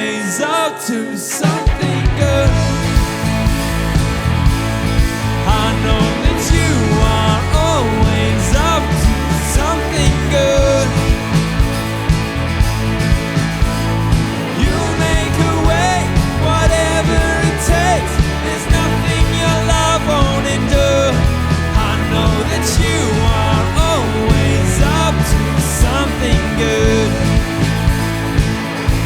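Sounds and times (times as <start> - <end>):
bending lead melody: 0.0 - 29.0
drums and bass: 1.4 - 29.0.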